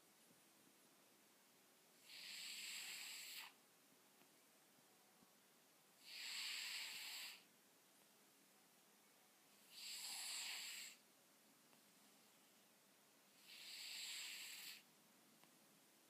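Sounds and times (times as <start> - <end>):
cat snoring: 2.0 - 3.6, 6.0 - 7.5, 9.6 - 11.0, 13.3 - 14.9.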